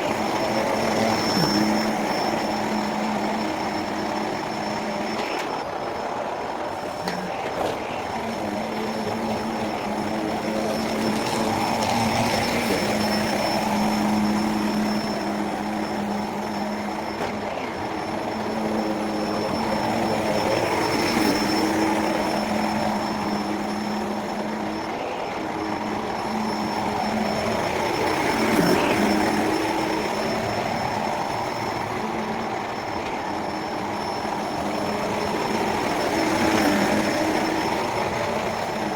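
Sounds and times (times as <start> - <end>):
sped-up vacuum cleaner drone: 0.0 - 38.9.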